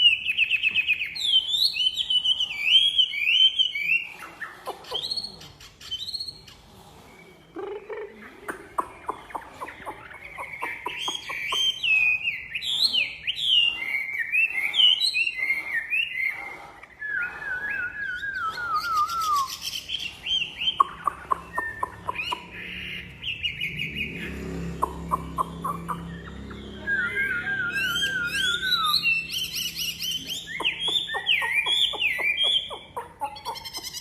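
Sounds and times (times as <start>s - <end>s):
bird singing whistled notes: 0.0s - 4.1s, 17.0s - 24.4s, 25.1s - 32.7s.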